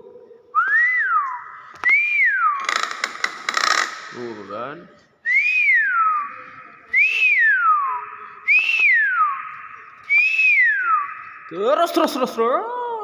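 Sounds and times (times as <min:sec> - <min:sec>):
bird whistling falling glide: 0:06.9 - 0:11.6.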